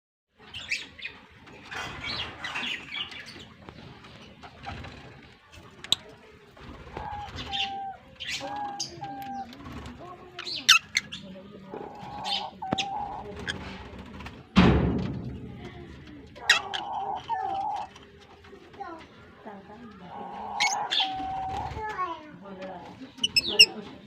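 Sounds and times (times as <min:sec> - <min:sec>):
lovebirds chirping: 0:00.4 - 0:13.8, 0:16.4 - 0:18.2, 0:18.8 - 0:24.0.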